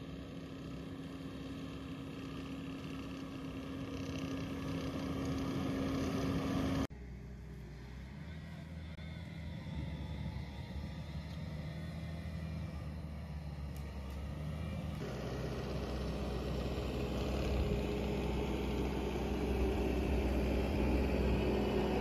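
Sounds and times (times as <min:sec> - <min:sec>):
loader engine running: 0:00.0 - 0:22.0.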